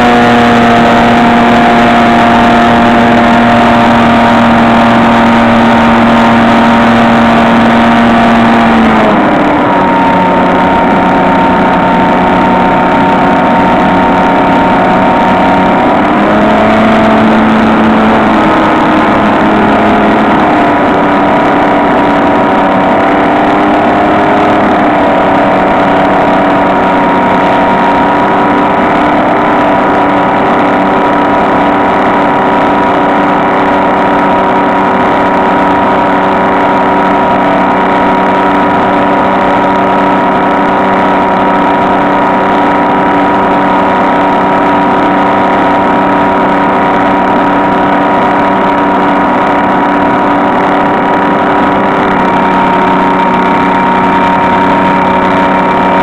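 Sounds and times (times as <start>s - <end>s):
model plane motor droning whine: 0.0s - 56.0s.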